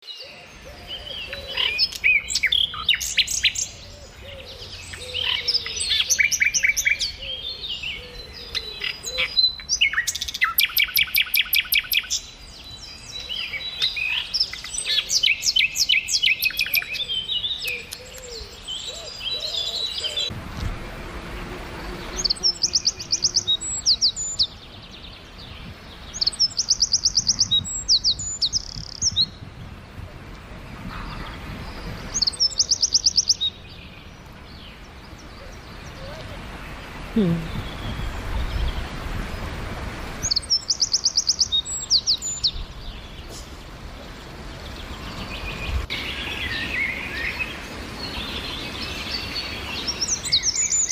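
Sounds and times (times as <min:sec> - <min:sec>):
songbirds chirping and trilling: 0:00.0 - 0:50.9
low rumbling noise: 0:20.3 - 0:23.6.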